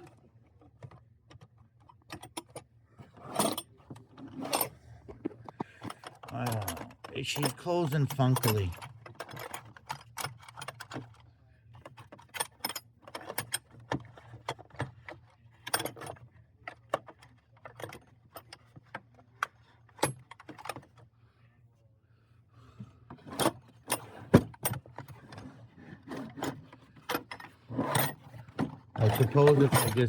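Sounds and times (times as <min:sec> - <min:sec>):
metal wrenches clinking: 0:06.2 - 0:10.8, 0:29.0 - 0:30.0.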